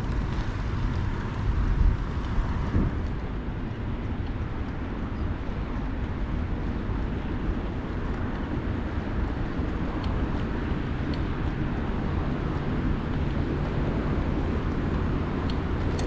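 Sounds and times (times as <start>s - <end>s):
bicycle rolling: 0.0s - 16.0s
wind on microphone: 0.0s - 16.0s.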